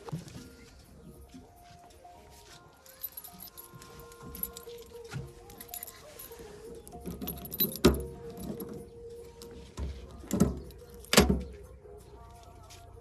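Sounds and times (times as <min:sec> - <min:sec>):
metal clanking and jangling: 0:02.8 - 0:11.7.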